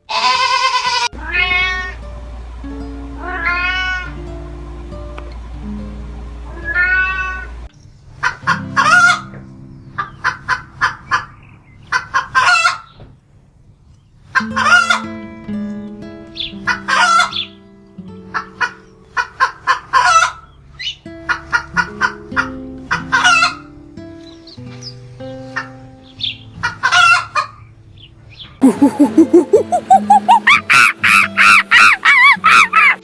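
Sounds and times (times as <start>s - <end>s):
cat meowing: 0.1s - 2.0s, 3.2s - 4.2s, 6.5s - 7.6s
rooster crowing: 0.2s - 7.7s, 8.5s - 9.3s
chickens clucking: 1.0s - 13.1s, 14.3s - 15.2s, 16.4s - 17.6s, 18.3s - 33.0s
background music: 28.6s - 32.9s.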